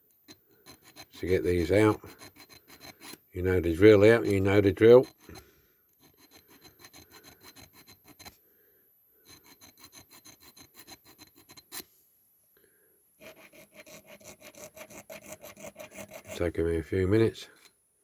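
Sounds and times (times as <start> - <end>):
hand file rasping on metal: 0.3 - 5.4, 6.0 - 8.4, 9.3 - 11.8, 13.2 - 16.6.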